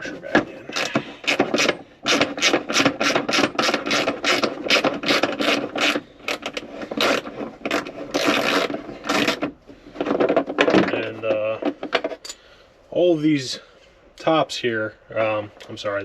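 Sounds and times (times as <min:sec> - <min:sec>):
hand ratchet clicking: 0:00.7 - 0:09.4.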